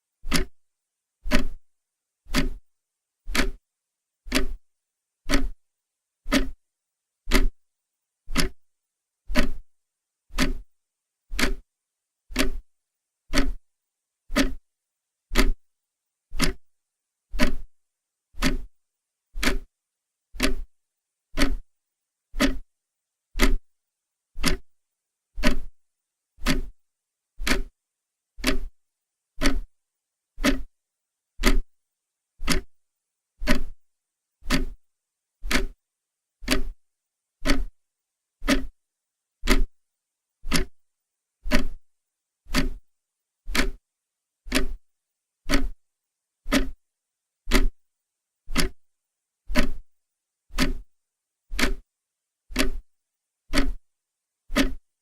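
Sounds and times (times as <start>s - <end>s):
clock ticking: 0.3s - 0.5s, 1.3s - 1.6s, 2.3s - 2.6s, 3.3s - 3.6s, 4.3s - 4.6s, 5.3s - 5.6s, 6.3s - 6.6s, 7.3s - 7.6s, 8.3s - 8.6s, 9.3s - 9.6s, 10.3s - 10.6s, 11.3s - 11.6s, 12.3s - 12.6s, 13.3s - 13.6s, 14.3s - 14.6s, 15.3s - 15.6s, 16.4s - 16.7s, 17.4s - 17.7s, 18.4s - 18.7s, 19.4s - 19.7s, 20.4s - 20.7s, 21.4s - 21.6s, 22.4s - 22.6s, 23.4s - 23.6s, 24.4s - 24.7s, 25.4s - 25.7s, 26.4s - 26.7s, 27.4s - 27.7s, 28.4s - 28.7s, 29.4s - 29.7s, 30.4s - 30.7s, 31.4s - 31.7s, 32.4s - 32.8s, 33.4s - 33.8s, 34.4s - 34.8s, 35.4s - 35.8s, 36.4s - 36.8s, 37.4s - 37.8s, 38.4s - 38.7s, 39.4s - 39.7s, 40.5s - 40.8s, 41.5s - 41.8s, 42.5s - 42.8s, 43.5s - 43.8s, 44.5s - 44.8s, 45.5s - 45.8s, 46.5s - 46.8s, 47.5s - 47.8s, 48.5s - 48.9s, 49.5s - 49.8s, 50.5s - 50.8s, 51.5s - 51.8s, 52.5s - 52.9s, 53.5s - 53.8s, 54.5s - 54.8s.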